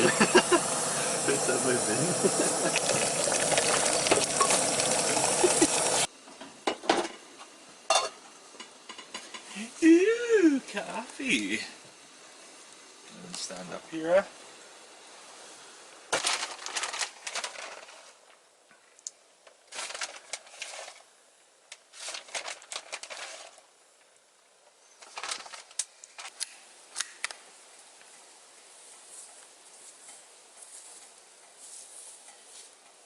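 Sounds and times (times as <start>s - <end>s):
dry brush rustling underfoot: 28.8s - 32.8s.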